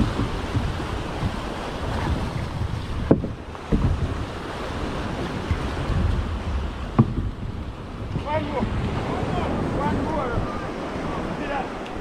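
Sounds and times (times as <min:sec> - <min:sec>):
dull thud: 0:00.0 - 0:01.4, 0:02.0 - 0:04.4, 0:05.2 - 0:08.9
water lapping against boat: 0:00.0 - 0:12.0
wind buffeting microphone: 0:00.0 - 0:12.0
sharp knock: 0:06.9 - 0:07.3.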